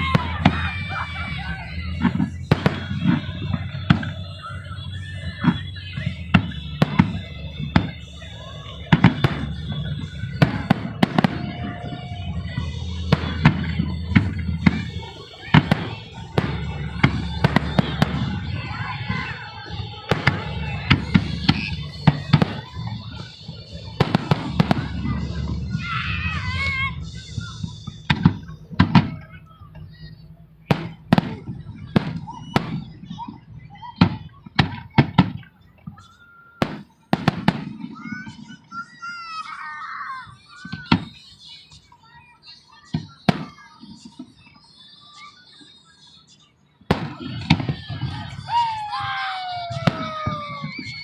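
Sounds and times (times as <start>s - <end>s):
fireworks bursting with sharp bangs: 0.0s - 39.6s, 40.5s - 44.5s, 46.8s - 51.0s.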